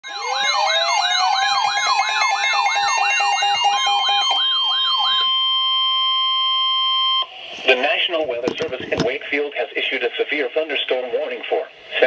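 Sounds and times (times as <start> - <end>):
rising whoop siren: 0.0 - 7.3
siren yelp: 0.0 - 7.4
warbling siren tone: 0.0 - 7.4.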